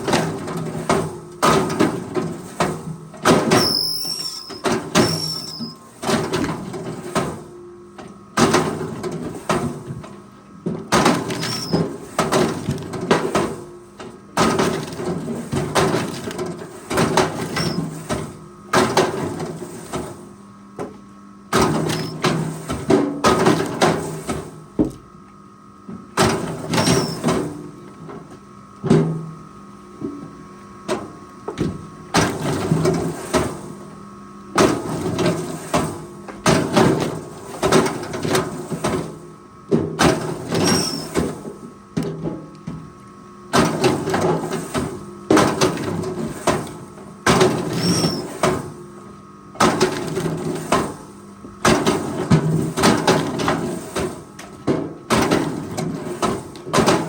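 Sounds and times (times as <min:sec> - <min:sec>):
clunking and scraping bursts: 0:00.4 - 0:07.4, 0:08.4 - 0:13.6, 0:21.6 - 0:24.5.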